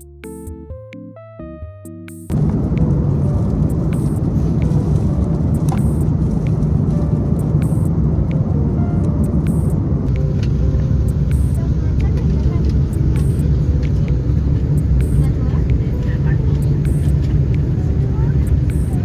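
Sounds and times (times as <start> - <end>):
airliner cabin rumble: 2.3 - 19.0.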